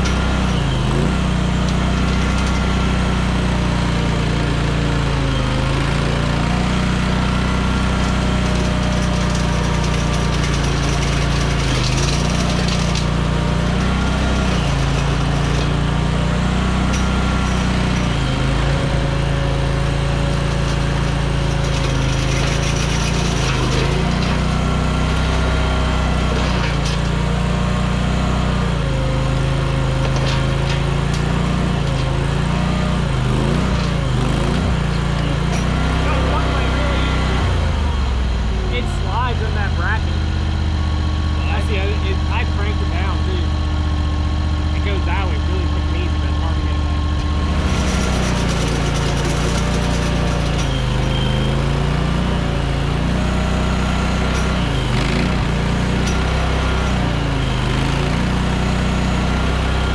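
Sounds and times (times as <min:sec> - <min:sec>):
skid steer engine under load: 0:00.0 - 0:59.9.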